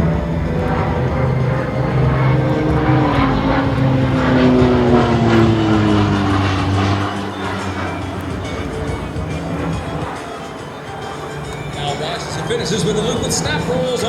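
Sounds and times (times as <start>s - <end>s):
propeller aircraft engine droning: 0.0s - 14.0s.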